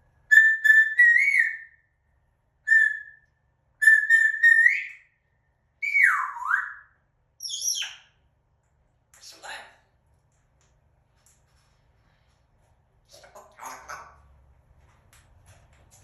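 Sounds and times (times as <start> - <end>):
parrot squeaky call: 0.3 - 1.8, 2.7 - 3.2, 3.8 - 5.1, 5.8 - 8.1
parrot whistling: 0.3 - 1.8, 2.7 - 3.2, 3.8 - 5.1, 5.8 - 8.1.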